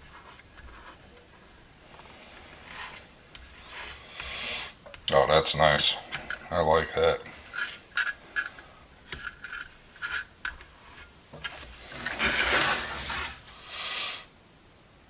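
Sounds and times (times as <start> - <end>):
rubbing scrape: 2.5 - 4.7, 9.2 - 13.5.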